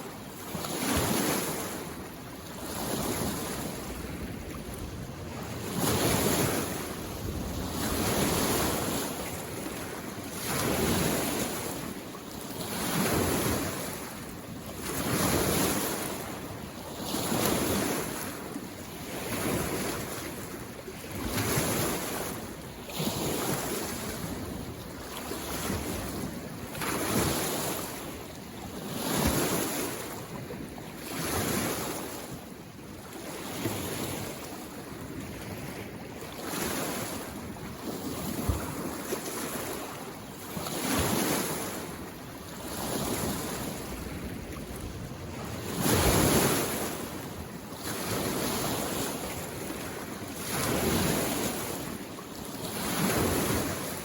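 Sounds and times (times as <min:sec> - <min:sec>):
waves washing on shore: 0:00.0 - 0:54.0.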